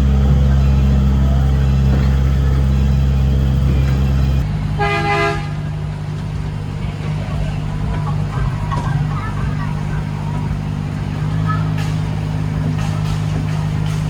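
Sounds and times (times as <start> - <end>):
ride train engine drone: 0.0 - 14.0
train horn toot: 4.8 - 5.9.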